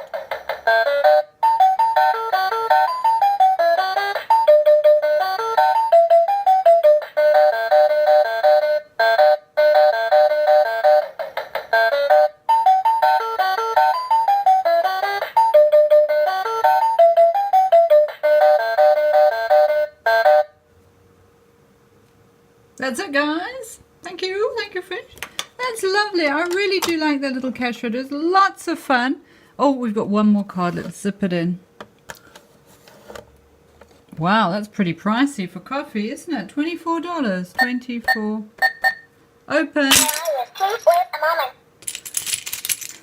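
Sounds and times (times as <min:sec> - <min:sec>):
toy cash register beeping tune: 0:00.1 - 0:20.5, 0:37.6 - 0:39.1.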